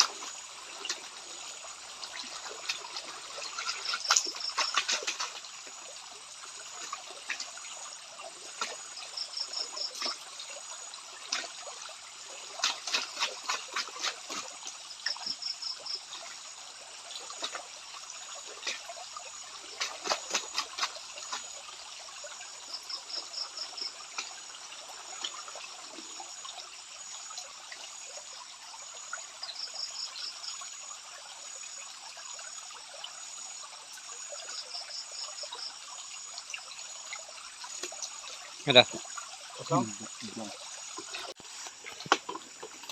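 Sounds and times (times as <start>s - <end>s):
quick splashes: 0.0s - 7.8s, 8.4s - 16.3s, 17.2s - 17.8s, 18.4s - 21.7s
faint high insect drone: 0.0s - 42.9s
stream water sloshing in pan: 0.0s - 42.9s.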